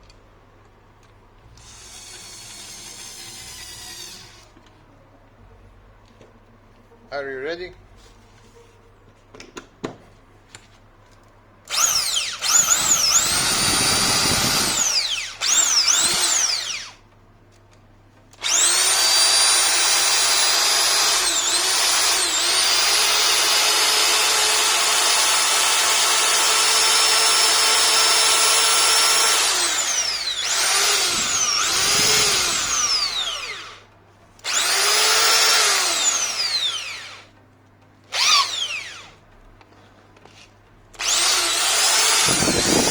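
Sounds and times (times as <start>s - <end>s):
electric drill motor whining: 1.6s - 4.5s, 11.7s - 17.0s, 18.4s - 33.8s, 34.4s - 37.3s, 38.1s - 39.2s, 41.0s - 42.9s.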